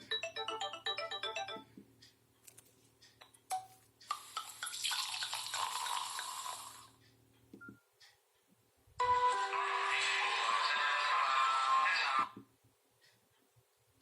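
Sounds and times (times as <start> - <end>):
phone ringtone: 0.0 - 1.7.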